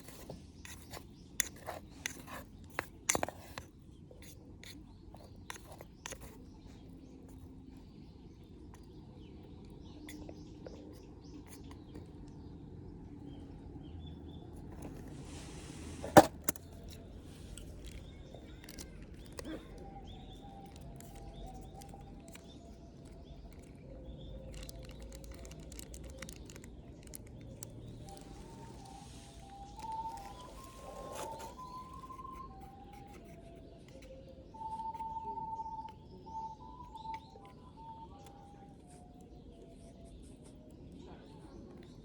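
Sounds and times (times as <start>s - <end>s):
faint chirps: 16.8s - 42.0s.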